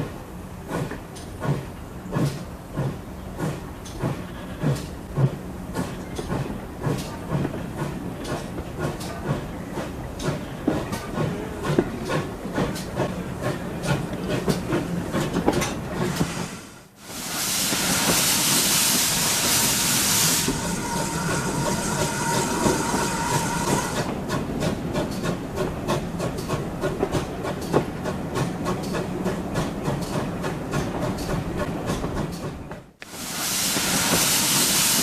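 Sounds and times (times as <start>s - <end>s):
steam train running: 0.0s - 35.0s
train clicks: 0.6s - 16.5s, 17.6s - 35.0s
steam hissing: 16.0s - 24.4s, 33.0s - 35.0s.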